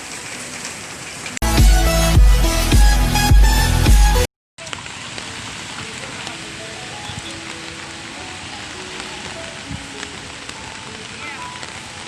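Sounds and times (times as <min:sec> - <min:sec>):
heavy rain falling: 0:00.0 - 0:12.0
water drips ticking: 0:04.6 - 0:12.0
faint background music: 0:05.8 - 0:12.0.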